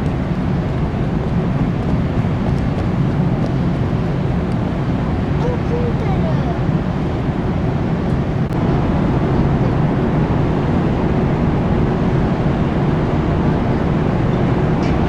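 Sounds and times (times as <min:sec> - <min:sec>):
ferry engine rumble: 0:00.0 - 0:15.0.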